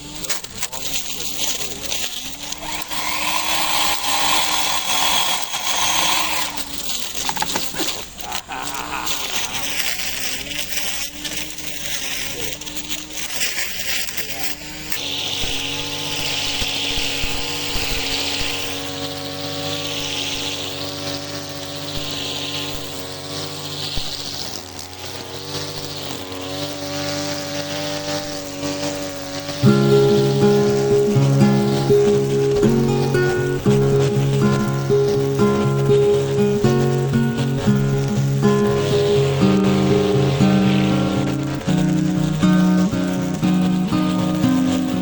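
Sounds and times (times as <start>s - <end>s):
electric chainsaw cutting log: 0.0s - 45.0s
hiss: 1.0s - 26.6s
steady music: 29.6s - 45.0s.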